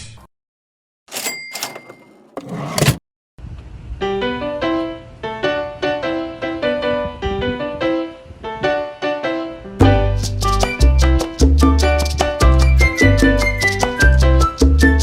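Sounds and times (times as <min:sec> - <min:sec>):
keyboard melody over bass line: 0:06.7 - 0:15.0.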